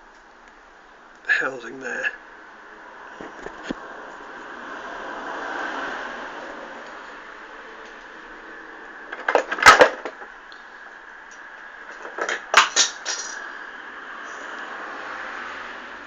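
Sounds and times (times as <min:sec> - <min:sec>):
metal spanners clattering: 0:09.1 - 0:10.3, 0:11.9 - 0:13.5.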